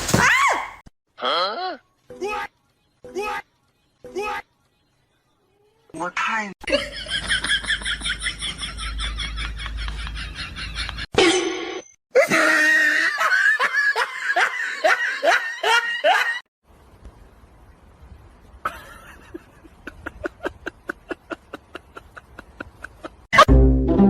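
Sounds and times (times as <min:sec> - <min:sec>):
hearty laughter: 0:06.7 - 0:11.1, 0:12.4 - 0:16.4, 0:18.6 - 0:23.3.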